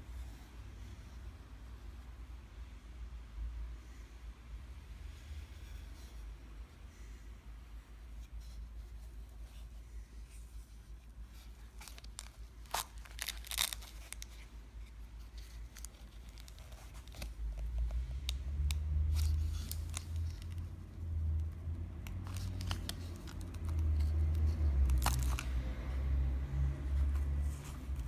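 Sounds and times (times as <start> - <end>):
plastic wrapping crinkling: 11.5 - 21.2, 22.0 - 25.6.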